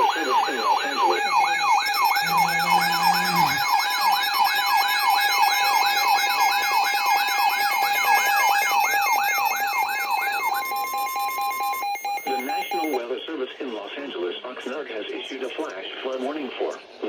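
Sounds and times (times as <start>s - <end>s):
electronic siren wail: 1.0s - 3.8s
steady electronic tones: 2.2s - 3.6s.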